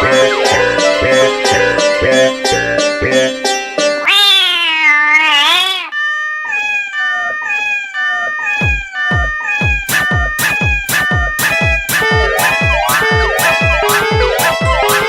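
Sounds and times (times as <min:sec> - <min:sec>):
cat meowing: 0:04.0 - 0:11.4.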